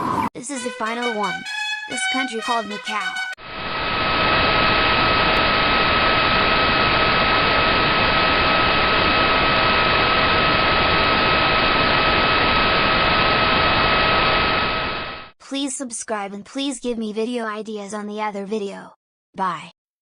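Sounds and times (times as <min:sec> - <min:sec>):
steady alarm tone: 0:00.0 - 0:03.4
static hiss: 0:03.5 - 0:15.3.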